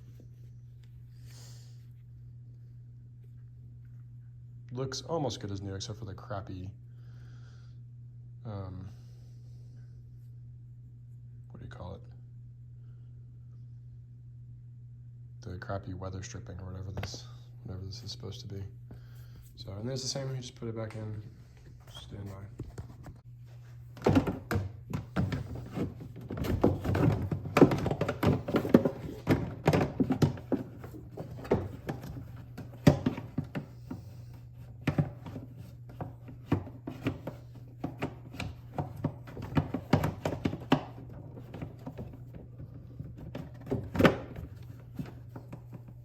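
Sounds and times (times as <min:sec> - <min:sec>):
steady low hum: 0:00.0 - 0:46.0
plastic knocks clicks and scraping: 0:34.8 - 0:45.9.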